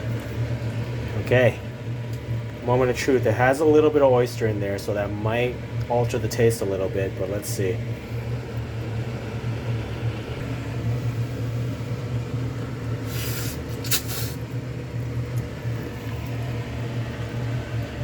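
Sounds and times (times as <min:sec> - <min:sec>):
low mechanical hum: 0:00.0 - 0:18.0
slurping noodles: 0:13.0 - 0:14.4.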